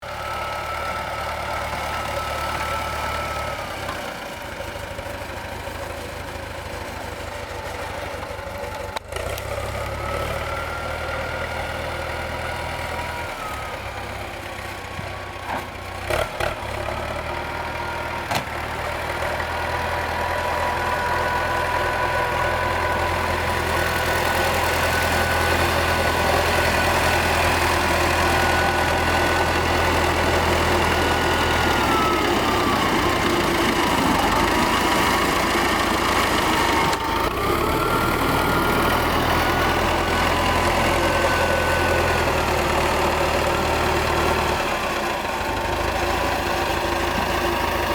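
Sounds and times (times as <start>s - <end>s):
tractor diesel engine running: 0.0s - 47.9s.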